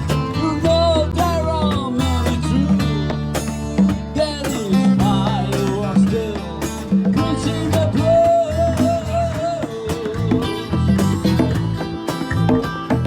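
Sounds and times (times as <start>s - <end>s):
stepping bass notes: 0.0s - 13.0s
strummed guitar: 0.0s - 13.0s.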